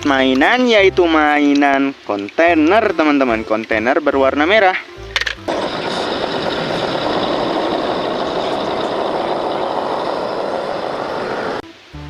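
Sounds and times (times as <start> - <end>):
running water spraying: 5.5 - 11.6.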